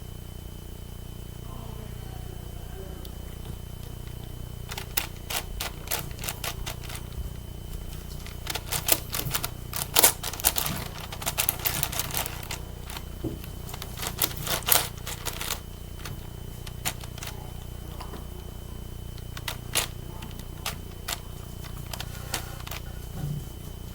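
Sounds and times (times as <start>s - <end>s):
puzzle cube clicking: 8.3s - 17.4s, 19.2s - 22.8s.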